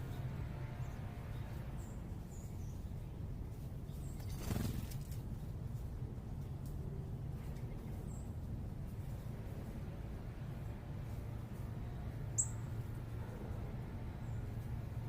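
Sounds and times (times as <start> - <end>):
low urban rumble: 0.0 - 15.0.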